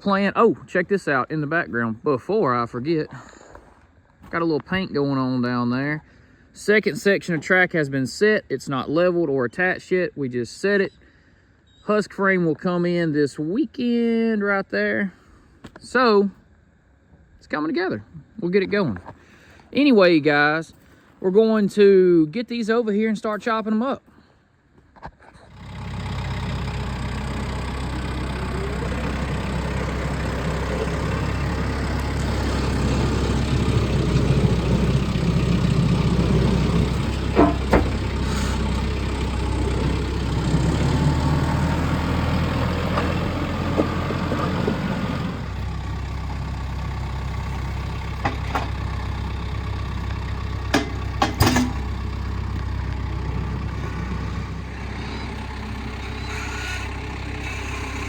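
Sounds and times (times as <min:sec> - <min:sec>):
engine running: 0:25.4 - 0:58.0
sharp knocks: 0:37.4 - 0:38.0.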